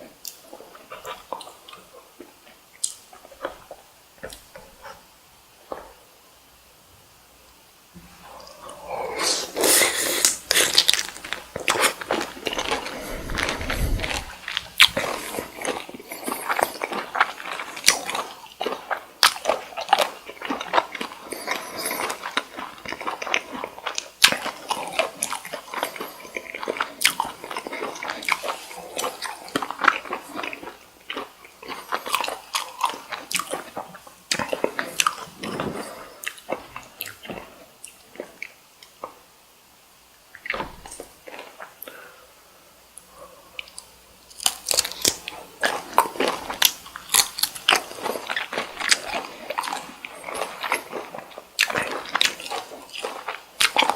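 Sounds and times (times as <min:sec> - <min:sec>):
chewing shrimp: 0:00.0 - 0:05.0, 0:08.2 - 0:39.2, 0:40.3 - 0:42.0, 0:43.0 - 0:53.9
low bump: 0:12.6 - 0:14.4.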